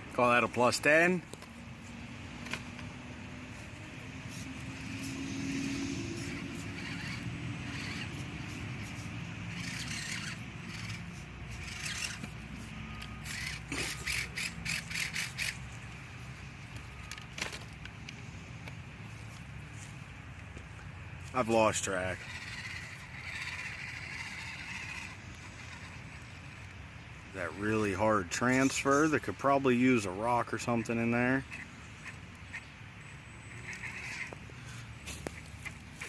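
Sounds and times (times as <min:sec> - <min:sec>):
tires clicking and scraping: 0:00.0 - 0:36.0
rc car motor and gear whine: 0:03.5 - 0:17.8, 0:21.2 - 0:29.5, 0:30.1 - 0:36.0.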